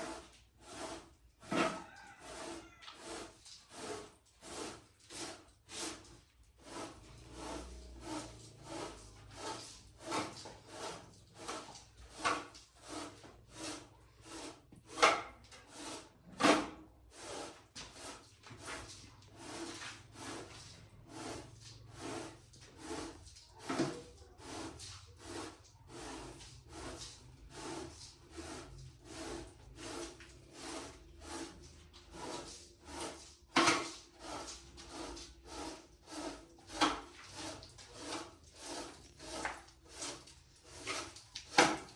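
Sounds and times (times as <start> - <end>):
rhythmic scraping strokes: 2.2 - 13.7.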